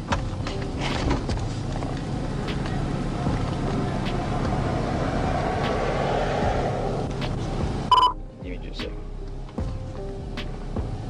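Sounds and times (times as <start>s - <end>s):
vehicle noise: 0.0s - 8.2s.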